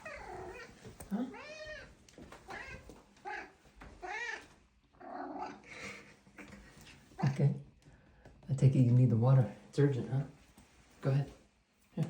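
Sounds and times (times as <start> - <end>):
cat meowing: 0.0 - 5.6.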